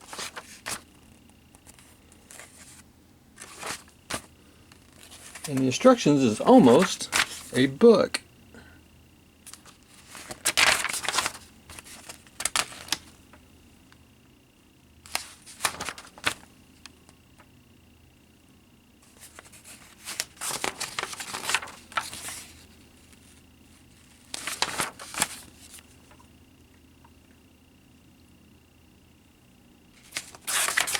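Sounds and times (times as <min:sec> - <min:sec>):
paper pages rustling: 0:00.0 - 0:08.0, 0:09.5 - 0:13.2, 0:15.1 - 0:16.5, 0:19.0 - 0:26.2, 0:30.0 - 0:30.9.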